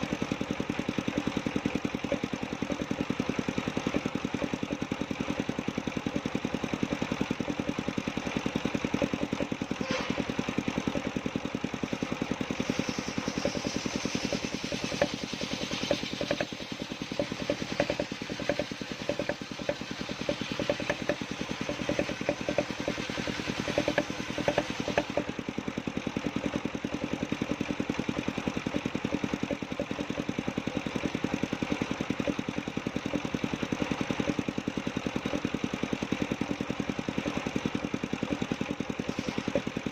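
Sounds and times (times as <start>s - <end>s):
circular saw cutting log: 0.0s - 39.9s
sawmill engine running: 0.0s - 39.9s.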